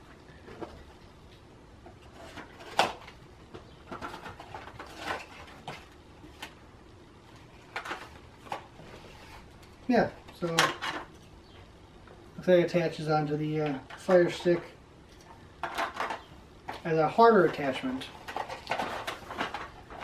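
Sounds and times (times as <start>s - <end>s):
plastic packaging rustling: 3.8s - 6.6s, 15.4s - 20.0s.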